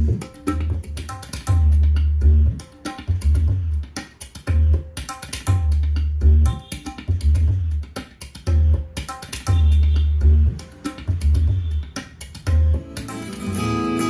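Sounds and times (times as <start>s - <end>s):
deep bass beat: 0.0s - 4.9s, 5.5s - 7.9s, 8.5s - 11.9s
tabla strokes: 0.0s - 14.0s
plucked strings: 12.5s - 14.0s.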